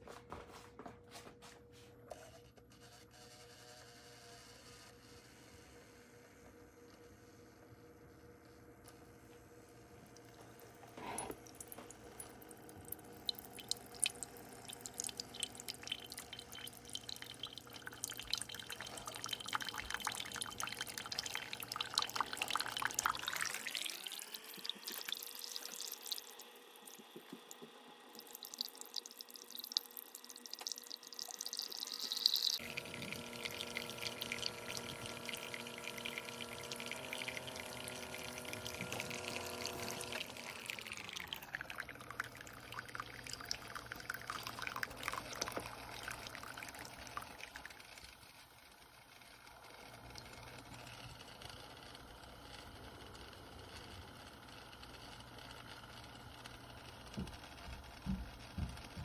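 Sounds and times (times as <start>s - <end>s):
coffee maker humming: 2.1s - 59.0s
liquid dripping into a cup: 10.1s - 48.3s.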